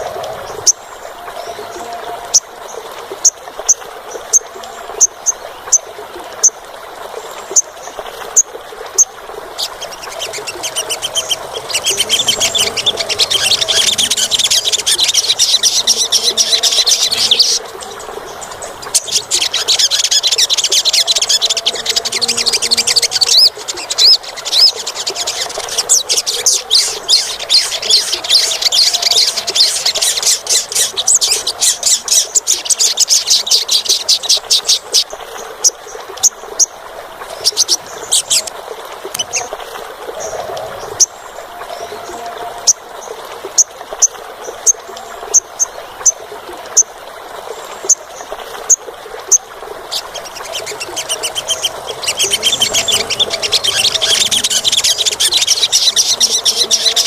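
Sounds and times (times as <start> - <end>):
bird twittering song: 7.2 - 46.9, 47.5 - 57.0.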